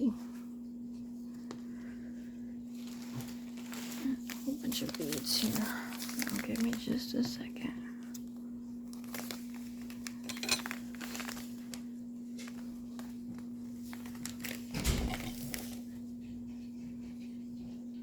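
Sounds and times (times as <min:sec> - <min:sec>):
bag bump: 0:14.4 - 0:15.8.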